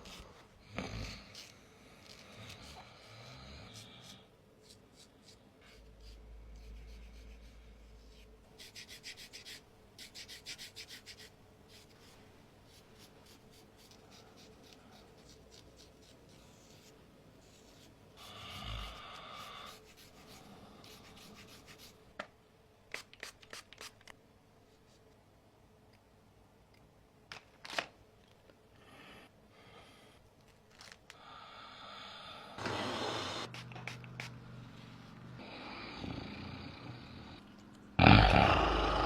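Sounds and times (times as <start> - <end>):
hands rubbing skin and hair: 22.9 - 25.1, 33.5 - 34.4.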